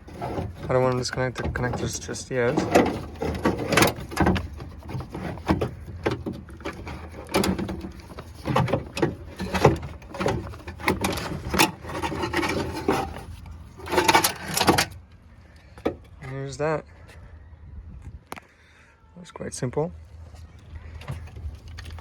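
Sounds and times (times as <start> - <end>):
clicks and knocks of hard parts: 0.0 - 16.4.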